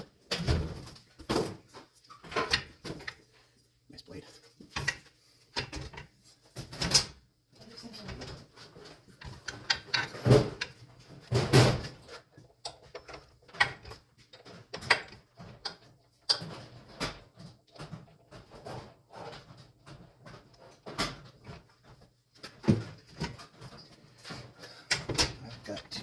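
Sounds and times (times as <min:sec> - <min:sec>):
knocks and clunks of saw parts: 0:04.6 - 0:07.1, 0:09.2 - 0:23.7, 0:24.3 - 0:26.0.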